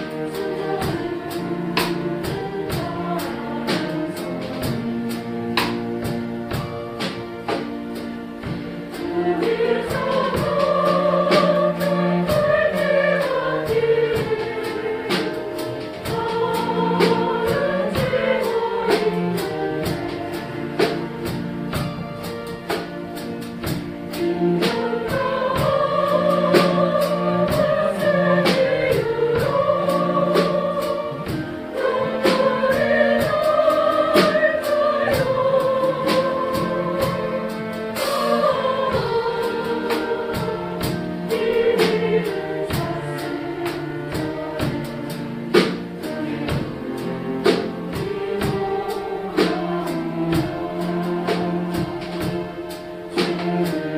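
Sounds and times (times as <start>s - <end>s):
group singing in unison: 0.0s - 6.2s, 8.9s - 22.0s, 23.7s - 53.9s.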